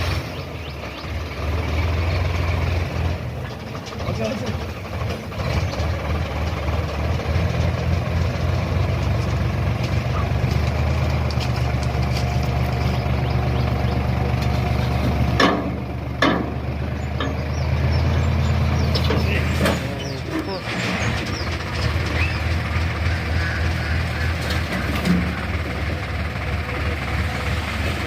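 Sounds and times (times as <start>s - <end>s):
tractor diesel engine running: 0.0s - 28.0s.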